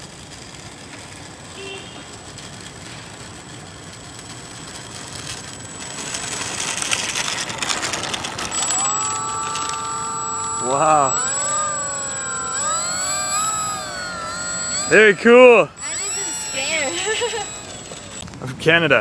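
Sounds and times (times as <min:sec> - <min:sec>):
model aircraft buzzing: 0:04.2 - 0:18.2.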